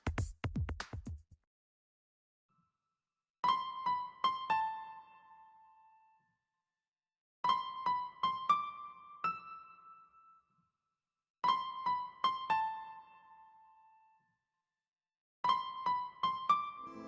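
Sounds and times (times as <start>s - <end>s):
electric piano melody: 3.4s - 6.2s, 7.4s - 10.2s, 11.4s - 14.0s, 15.5s - 17.0s.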